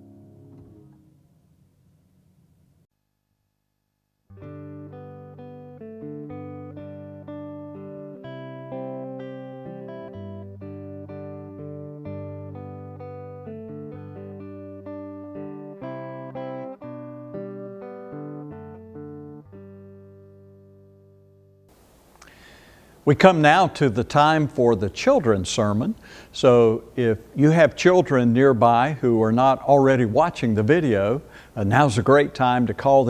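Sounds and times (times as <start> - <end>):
plucked guitar melody: 0.0 - 1.3, 4.3 - 22.4.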